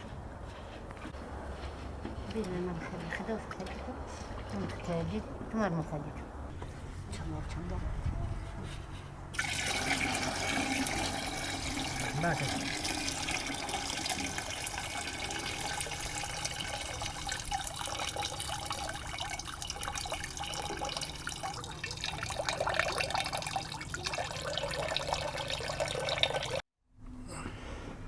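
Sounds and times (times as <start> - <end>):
water running and splashing: 9.4 - 26.6.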